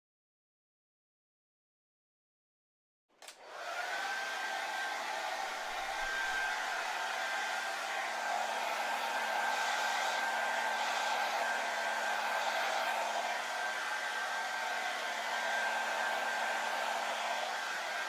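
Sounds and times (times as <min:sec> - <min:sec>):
hair dryer switch click: 0:03.2 - 0:03.8
hair dryer running: 0:03.2 - 0:18.0.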